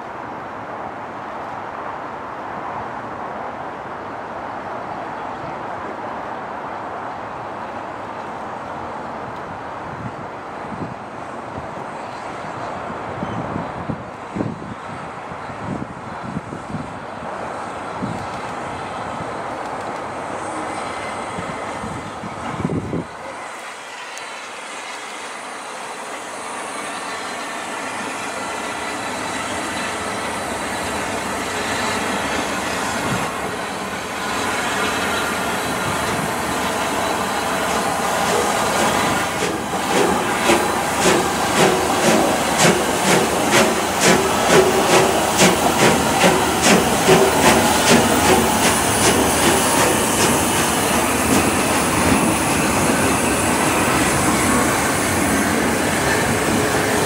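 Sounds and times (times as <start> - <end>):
steam train approaching: 10.5 - 57.0
steam hiss: 23.2 - 57.0.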